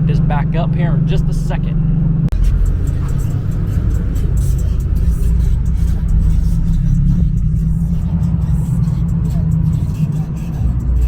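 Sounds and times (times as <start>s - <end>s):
car engine rumbling: 0.0s - 11.0s
music playing: 2.3s - 11.0s.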